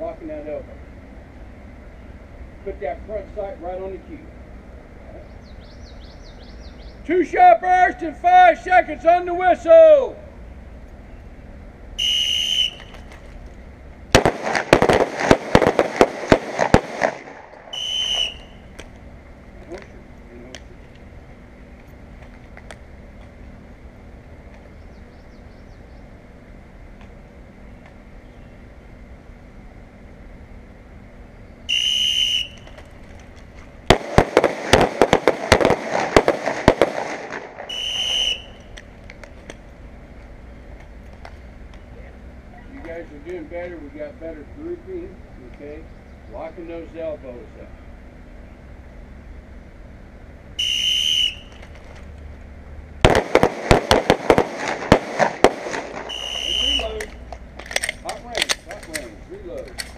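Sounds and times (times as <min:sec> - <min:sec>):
whistle blast: 0:12.0 - 0:13.0, 0:17.7 - 0:18.7, 0:31.7 - 0:32.8, 0:37.7 - 0:38.8, 0:50.6 - 0:51.6, 0:56.0 - 0:57.2
pistol shots: 0:14.2 - 0:18.4, 0:33.9 - 0:38.4, 0:53.0 - 0:56.8.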